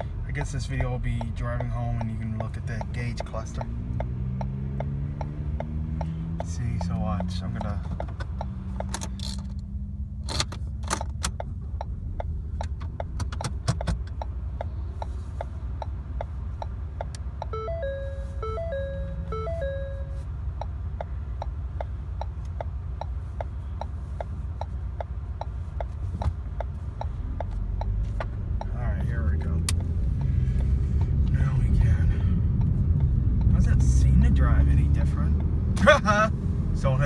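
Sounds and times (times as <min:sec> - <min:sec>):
engine and road rumble: 0:00.0 - 0:37.0
turn signal clicking: 0:00.0 - 0:37.0
dashboard chime tones: 0:17.5 - 0:20.2.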